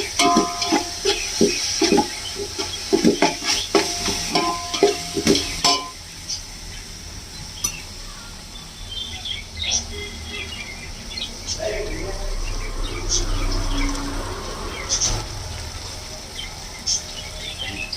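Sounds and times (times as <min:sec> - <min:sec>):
ladle scraping a pot: 0:00.0 - 0:06.0
onions sizzling in a pan: 0:00.0 - 0:11.9, 0:12.7 - 0:17.9.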